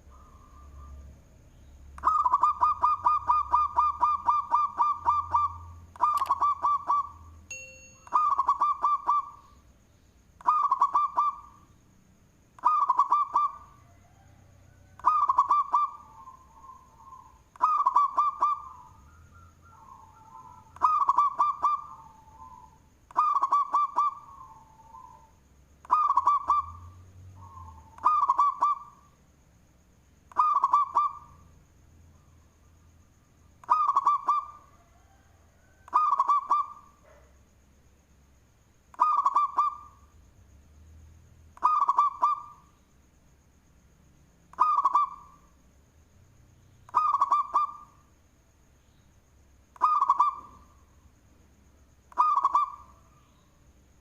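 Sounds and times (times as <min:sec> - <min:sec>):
dove cooing: 0:02.0 - 0:07.2, 0:08.1 - 0:09.4, 0:10.4 - 0:11.6, 0:12.6 - 0:29.1, 0:30.3 - 0:31.4, 0:33.6 - 0:37.2, 0:39.0 - 0:40.0, 0:41.6 - 0:42.6, 0:44.5 - 0:45.3, 0:46.9 - 0:48.0, 0:49.8 - 0:50.7, 0:52.1 - 0:53.1.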